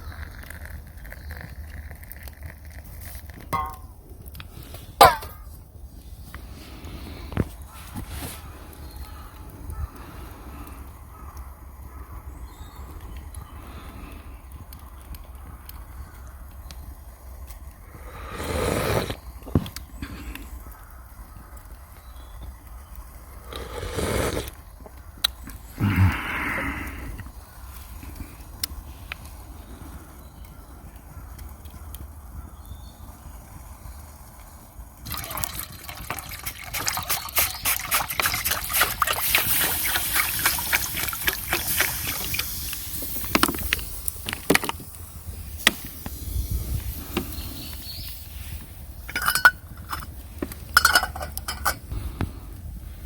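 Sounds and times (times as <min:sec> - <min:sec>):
knocks and clinks: 0:03.6 - 0:03.9, 0:49.1 - 0:50.1, 0:50.7 - 0:51.9
water pouring into a pot: 0:35.0 - 0:44.4.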